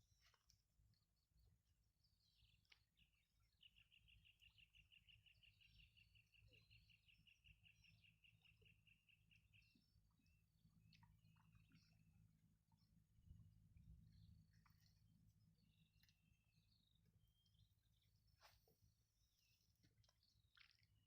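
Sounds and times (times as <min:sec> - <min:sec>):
bird chirps: 0:02.3 - 0:10.2
low background rumble: 0:10.4 - 0:18.0.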